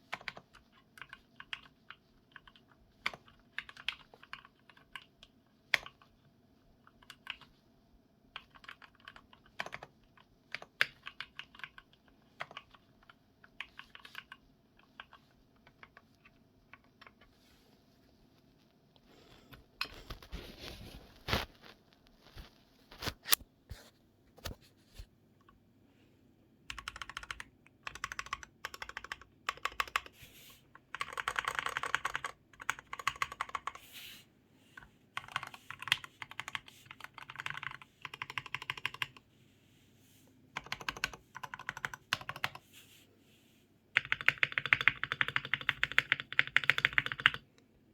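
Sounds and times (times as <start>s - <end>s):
typing on mechanical keyboard: 0.0s - 6.1s, 6.9s - 7.5s, 8.3s - 17.3s, 26.7s - 30.2s, 30.8s - 33.8s, 35.2s - 39.2s, 40.6s - 42.6s, 44.0s - 47.5s.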